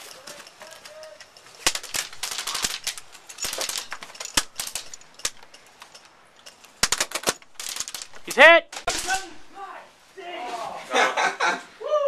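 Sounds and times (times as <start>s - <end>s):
airsoft guns firing: 1.6s - 5.5s, 6.8s - 9.6s.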